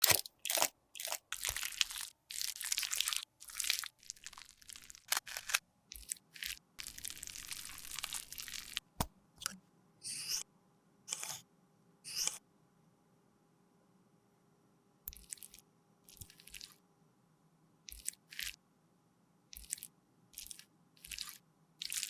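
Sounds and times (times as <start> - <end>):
makeup crunching and scraping: 0.0 - 9.0, 19.6 - 22.0.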